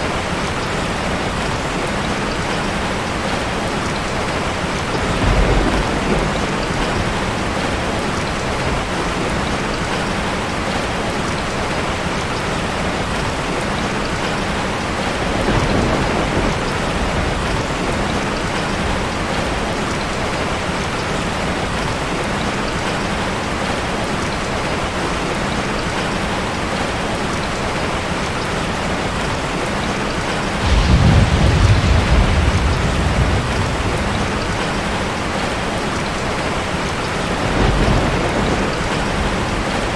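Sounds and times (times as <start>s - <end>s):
heavy rain falling: 0.0s - 39.9s
rolling thunder: 4.8s - 9.5s, 15.2s - 19.8s, 30.5s - 39.9s.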